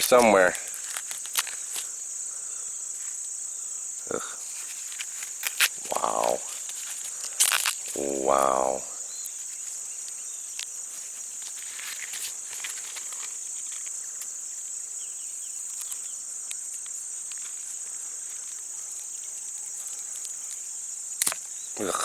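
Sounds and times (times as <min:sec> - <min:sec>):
handling clicks and rustles: 0:00.0 - 0:01.9, 0:04.4 - 0:08.6, 0:09.2 - 0:14.4
insects droning: 0:00.0 - 0:22.0.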